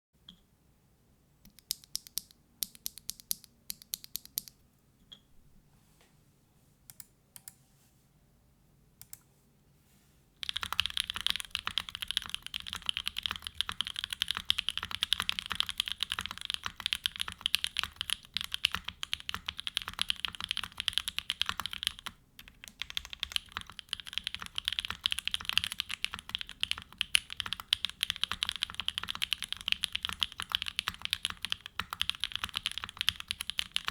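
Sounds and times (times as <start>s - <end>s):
typing on mechanical keyboard: 1.5s - 4.5s, 10.4s - 33.9s.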